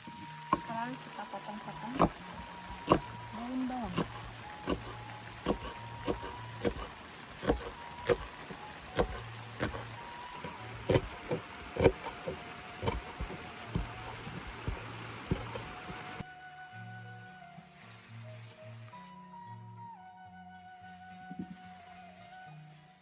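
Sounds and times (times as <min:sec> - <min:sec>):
rain hissing: 0:00.0 - 0:19.2
knife chopping on cutting board: 0:03.9 - 0:08.3, 0:08.9 - 0:15.7.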